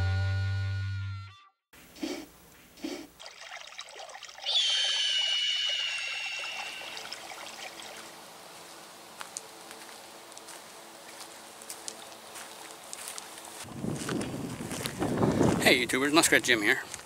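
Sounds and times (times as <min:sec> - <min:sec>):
water trickling and pouring: 0:03.2 - 0:08.2.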